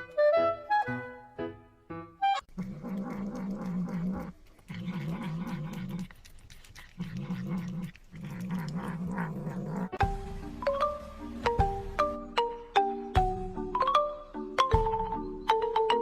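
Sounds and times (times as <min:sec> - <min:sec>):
dog growling: 0:02.5 - 0:10.0.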